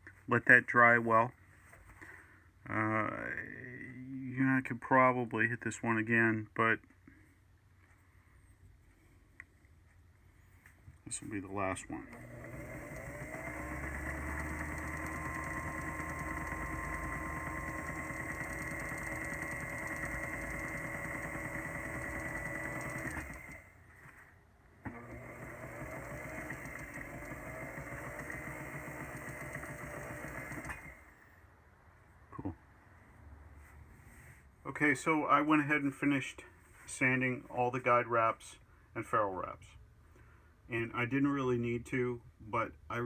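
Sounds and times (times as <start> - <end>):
small electric motor whining: 12.1 - 23.7, 24.9 - 31.0.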